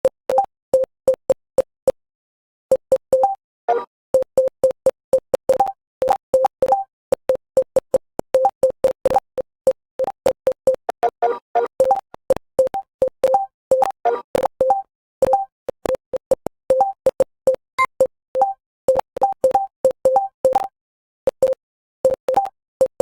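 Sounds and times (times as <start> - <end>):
short electronic keystroke beeps: 0.0 - 1.4, 2.7 - 23.0.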